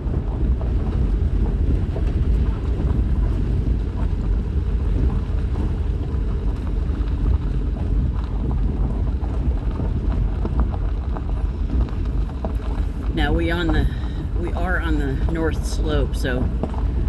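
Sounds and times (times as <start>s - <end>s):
vehicle rumble on dirt road: 0.0s - 17.0s.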